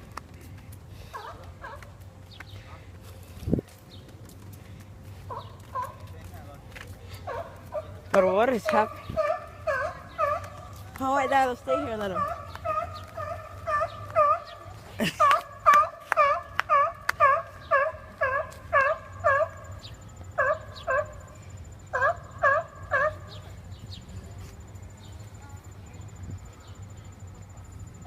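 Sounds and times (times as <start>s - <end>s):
seal calling: 9.1s - 10.5s, 11.7s - 14.7s.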